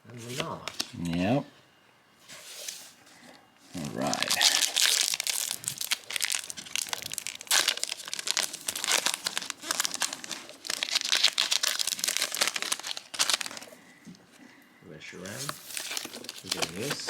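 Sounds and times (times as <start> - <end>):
foil wrapper and cards crinkling: 3.8 - 13.8, 15.2 - 17.0.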